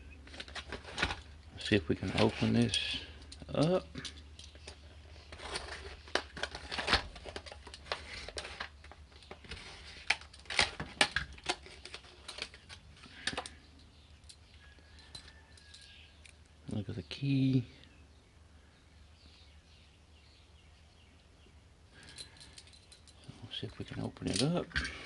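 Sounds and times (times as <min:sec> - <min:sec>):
plastic packaging crinkling: 0:00.3 - 0:02.9, 0:04.5 - 0:13.5
padlock and keys rattling: 0:03.2 - 0:05.0, 0:22.0 - 0:23.3.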